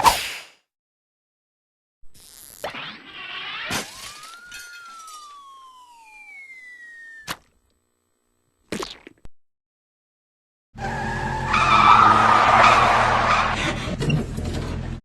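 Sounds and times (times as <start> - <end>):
cartoon crash: 2.6 - 7.4
descending whistle: 3.9 - 7.3, 10.8 - 13.6.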